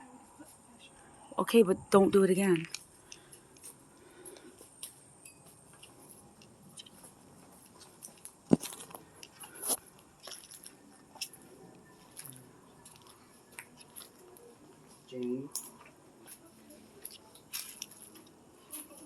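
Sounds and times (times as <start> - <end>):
footsteps on debris: 6.8 - 11.4.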